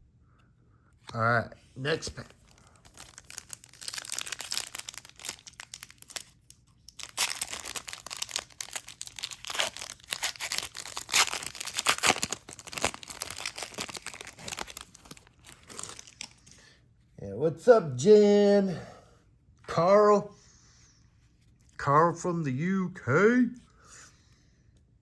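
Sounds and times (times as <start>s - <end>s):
card pack wrapper crinkling: 1.8s - 16.6s.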